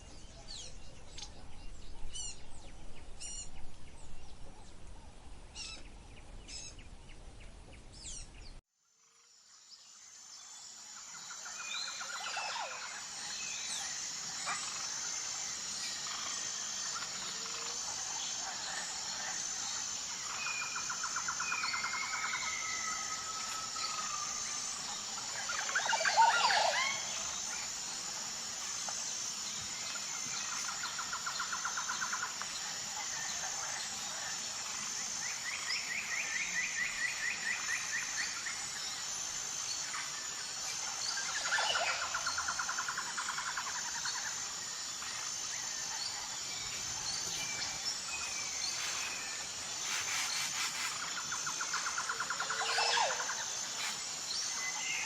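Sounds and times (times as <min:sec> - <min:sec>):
birds calling in trills: 0:05.5 - 0:08.6, 0:11.5 - 0:28.6, 0:45.0 - 0:55.0
high-pitched insect drone: 0:08.8 - 0:55.0.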